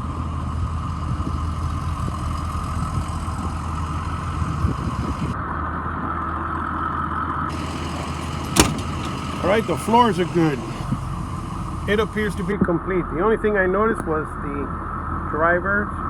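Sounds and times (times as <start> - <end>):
bus engine idling: 0.0 - 5.4, 7.5 - 12.6.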